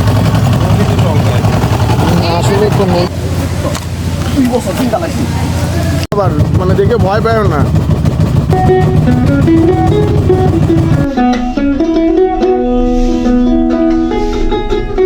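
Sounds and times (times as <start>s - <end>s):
plucked guitar music: 8.4s - 15.0s.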